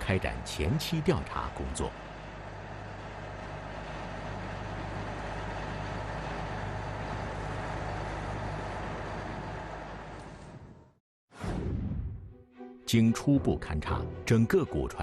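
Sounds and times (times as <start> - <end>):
engine humming: 0.0 - 11.0.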